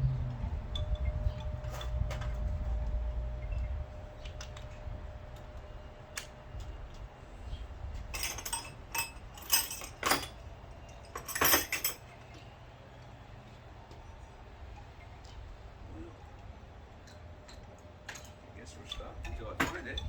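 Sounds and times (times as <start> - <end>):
metal hand tools clinking: 8.1 - 12.2.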